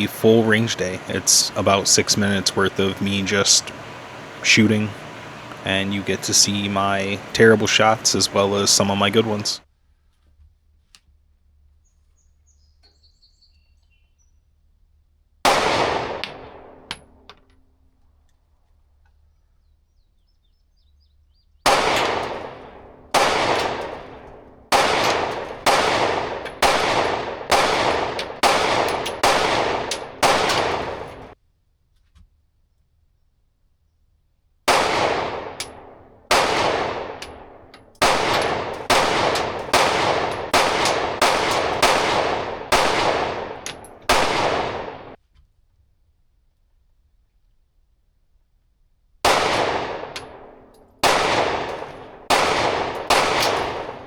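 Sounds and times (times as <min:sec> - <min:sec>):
pistol shots with ringing echo: 0:00.0 - 0:09.6, 0:15.5 - 0:16.9, 0:21.7 - 0:31.4, 0:34.7 - 0:45.2, 0:49.3 - 0:54.0.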